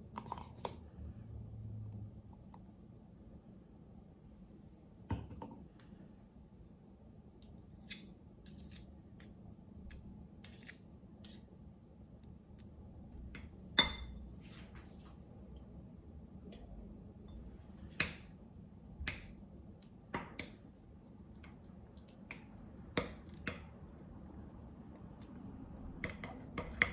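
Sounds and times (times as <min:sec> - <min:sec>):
sharp clink with ringing tone: 0:13.8 - 0:14.2
small objects clicking and tapping: 0:19.0 - 0:20.6, 0:21.3 - 0:23.9.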